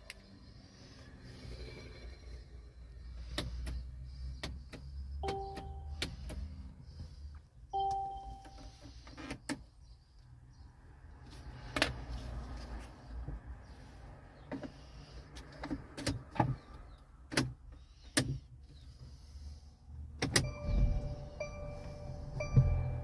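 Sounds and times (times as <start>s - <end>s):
car electronic chimes: 5.2s - 6.1s, 7.7s - 8.7s, 20.4s - 23.0s.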